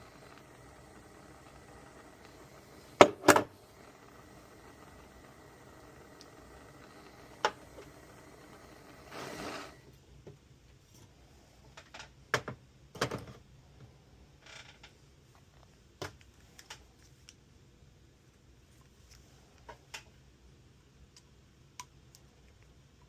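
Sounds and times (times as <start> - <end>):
short hiss: 0.0 - 9.8.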